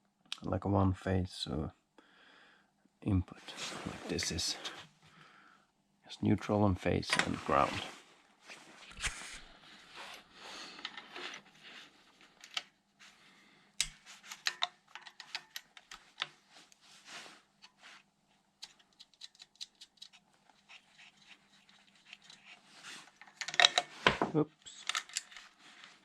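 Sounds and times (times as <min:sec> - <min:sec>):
small tools clicking and tapping: 0:13.8 - 0:16.4, 0:18.6 - 0:20.2.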